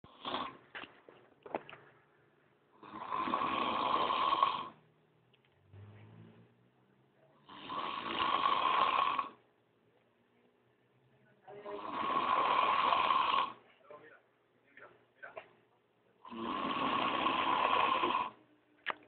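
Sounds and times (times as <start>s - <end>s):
man snoring: 0.0s - 0.6s, 2.8s - 4.8s, 7.4s - 9.4s, 11.7s - 13.6s, 16.2s - 18.4s.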